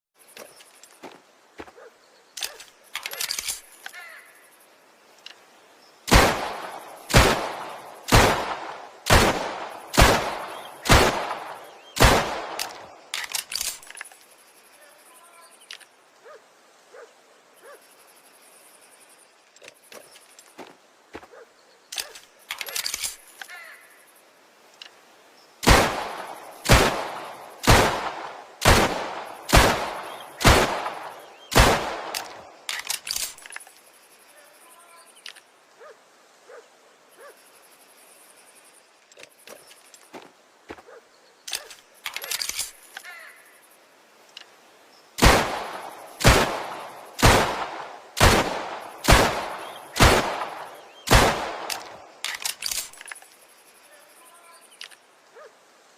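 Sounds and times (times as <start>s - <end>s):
pistol shots: 6.1s - 13.3s, 25.6s - 32.4s, 45.2s - 52.9s.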